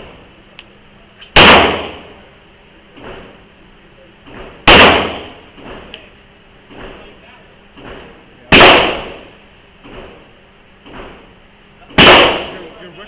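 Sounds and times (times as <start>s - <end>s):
gunshots echoing: 1.4s - 2.2s, 4.3s - 5.9s, 7.8s - 9.4s, 11.9s - 12.8s.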